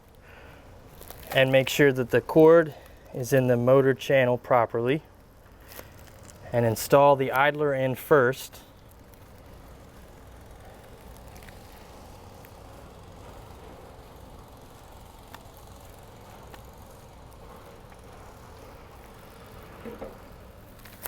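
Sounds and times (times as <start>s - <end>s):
low background rumble: 5.0s - 21.0s.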